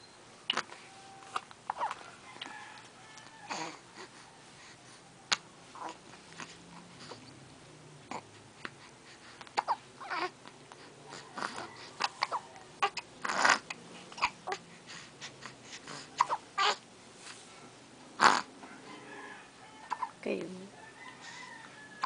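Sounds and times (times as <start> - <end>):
whimpering cries: 9.6 - 10.4, 11.0 - 14.7
sniffing and snuffling: 13.2 - 16.5.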